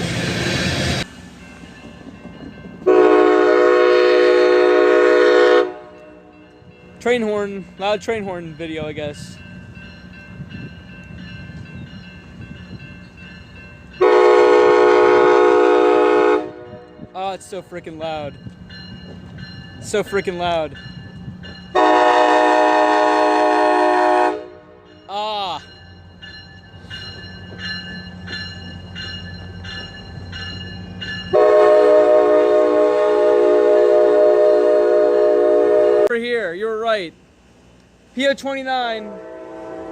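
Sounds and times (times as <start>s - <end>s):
passing train rumble: 0.0s - 39.9s
locomotive air horn blast: 2.9s - 6.2s, 14.0s - 16.9s, 21.8s - 24.8s, 31.3s - 36.1s, 39.0s - 39.9s.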